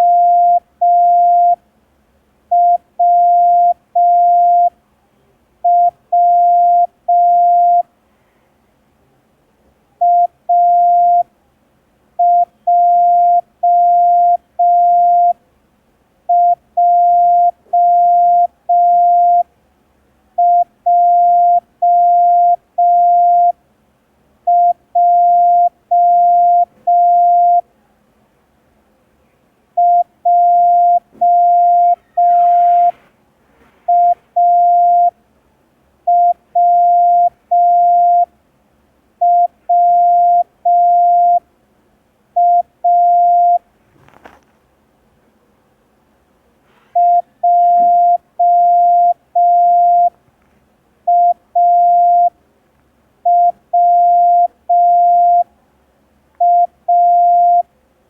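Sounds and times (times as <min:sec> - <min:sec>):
morse code beeps: 0:00.0 - 0:01.6, 0:02.5 - 0:04.7, 0:05.7 - 0:07.9, 0:10.0 - 0:11.3, 0:12.2 - 0:15.4, 0:16.3 - 0:19.5, 0:20.4 - 0:23.6, 0:24.5 - 0:27.6, 0:29.8 - 0:33.0, 0:33.9 - 0:35.1, 0:36.1 - 0:38.3, 0:39.2 - 0:41.4, 0:42.4 - 0:43.6, 0:47.0 - 0:50.2, 0:51.1 - 0:52.3, 0:53.3 - 0:55.5, 0:56.4 - 0:57.7.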